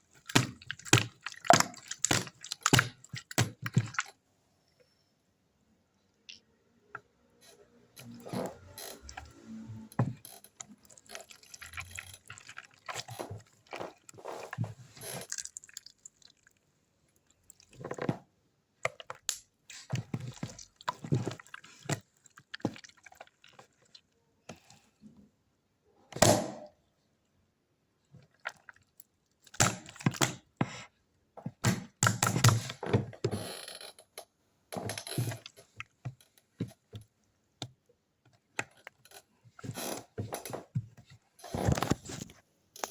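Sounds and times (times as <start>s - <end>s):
slime squelching and popping: 0.0s - 4.2s, 8.1s - 18.0s, 18.8s - 24.8s, 28.2s - 30.6s.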